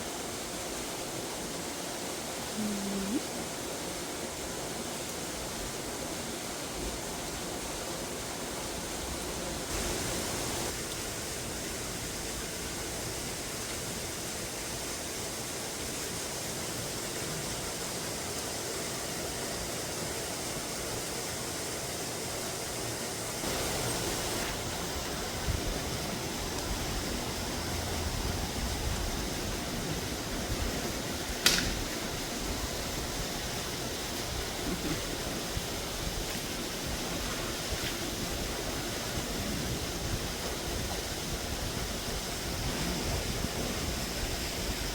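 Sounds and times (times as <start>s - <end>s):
rain hissing: 0.0s - 44.9s
sharp click: 31.4s - 31.9s.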